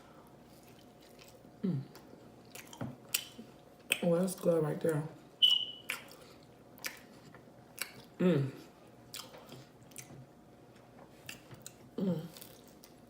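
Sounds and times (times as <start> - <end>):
mouth chewing and smacking: 0.5 - 4.0, 5.4 - 8.2, 9.0 - 13.0
person humming: 1.6 - 2.0, 8.2 - 8.7, 12.0 - 12.4.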